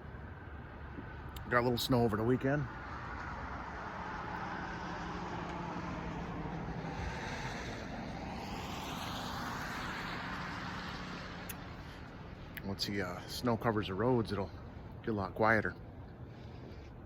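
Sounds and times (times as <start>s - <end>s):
cars hissing on road: 3.6s - 12.3s.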